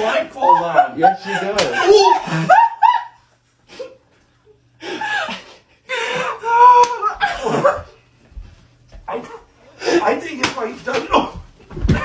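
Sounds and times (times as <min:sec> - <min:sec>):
people laughing hard: 0:00.0 - 0:04.0, 0:04.8 - 0:08.0.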